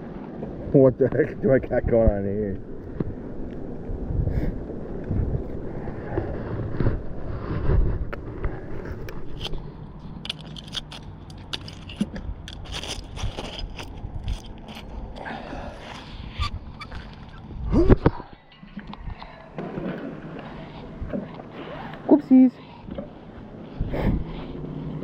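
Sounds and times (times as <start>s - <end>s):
wind rumbling on microphone: 0.0s - 25.0s
metal pieces scraping and clicking: 9.3s - 14.9s.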